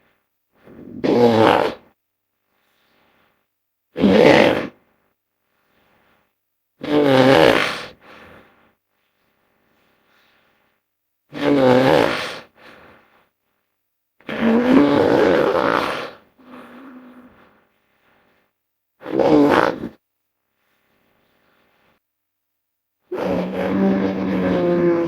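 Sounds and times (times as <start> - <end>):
animal grunt: 23.1 - 25.0
rough animal roars: 23.1 - 25.0.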